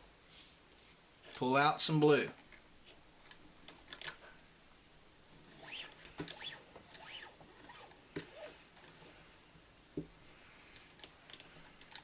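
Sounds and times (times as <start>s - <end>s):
cord rubbing on cord: 5.4s - 9.4s.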